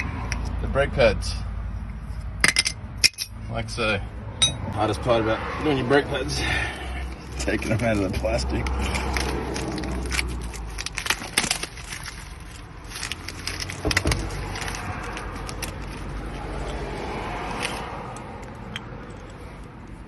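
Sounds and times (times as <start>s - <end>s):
sharp clicks and clinks: 2.4s - 3.4s
plastic packaging crinkling: 9.0s - 16.4s.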